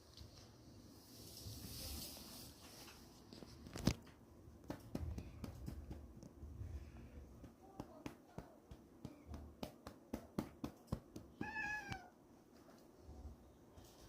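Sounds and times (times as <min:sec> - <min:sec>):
cat meowing: 0:11.4 - 0:12.2.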